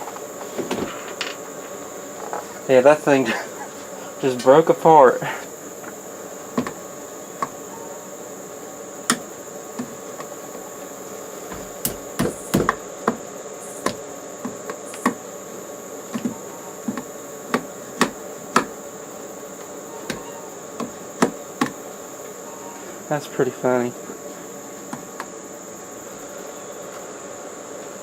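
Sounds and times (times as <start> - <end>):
insects droning: 0.0 - 28.0
hammer knocking: 6.6 - 6.8, 11.5 - 13.2, 16.2 - 18.8, 20.1 - 21.8.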